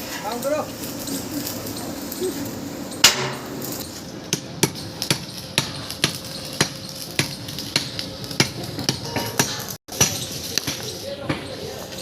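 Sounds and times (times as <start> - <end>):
sharp metallic clanks: 2.9 - 11.6.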